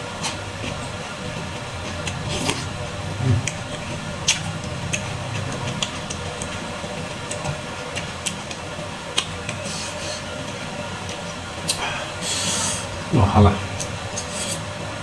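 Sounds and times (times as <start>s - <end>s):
wet chewing mouth clicks: 1.9s - 6.6s.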